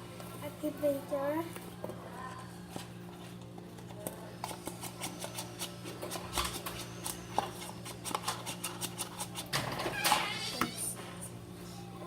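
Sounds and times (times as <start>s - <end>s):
low electrical hum: 0.0s - 12.0s
spoon scraping slime in bowl: 4.4s - 10.8s.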